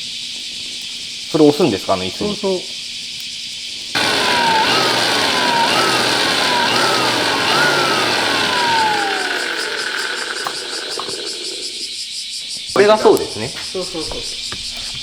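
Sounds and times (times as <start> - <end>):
gas torch roaring: 4.0 - 12.0.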